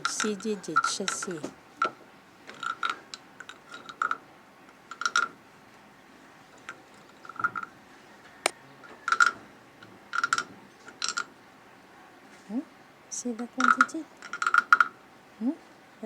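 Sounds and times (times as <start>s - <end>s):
wooden frog rasping croaks: 10.1s - 11.3s, 13.6s - 15.0s.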